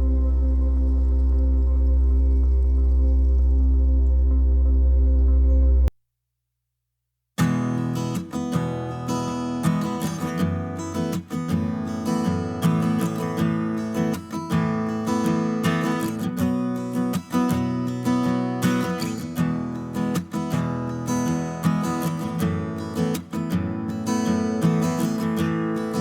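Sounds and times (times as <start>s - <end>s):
strummed acoustic guitar: 7.4s - 26.0s.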